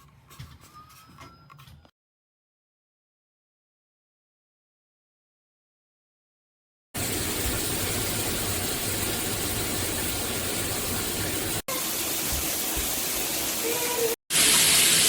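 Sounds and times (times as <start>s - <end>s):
shower water spraying: 7.0s - 15.0s.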